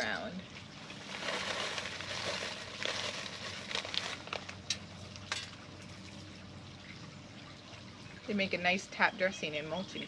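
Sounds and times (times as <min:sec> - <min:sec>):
gritty rustle of stones: 0:00.9 - 0:04.6.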